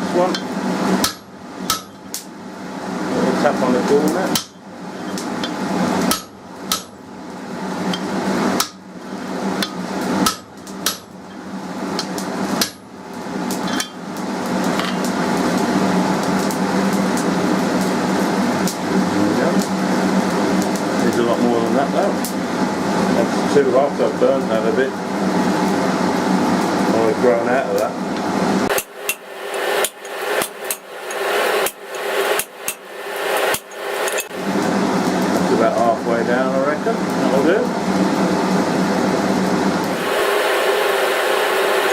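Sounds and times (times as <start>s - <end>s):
steady hum: 0.0s - 41.9s
hammer striking steel on anvil: 0.3s - 2.1s, 5.4s - 7.0s, 9.6s - 11.1s, 28.7s - 34.4s.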